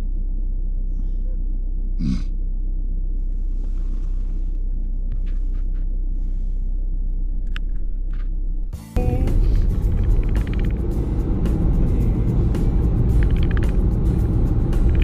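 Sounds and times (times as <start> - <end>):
car engine running inside cabin: 0.0 - 15.0
faint rustles: 3.1 - 8.4.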